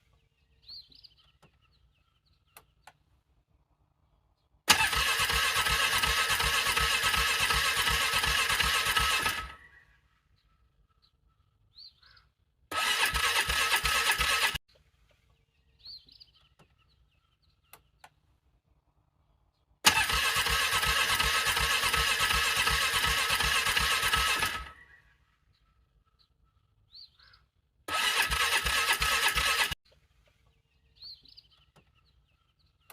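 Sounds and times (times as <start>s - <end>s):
engine cranking on starter: 4.7s - 9.7s, 12.7s - 14.6s, 19.8s - 24.9s, 27.9s - 29.8s.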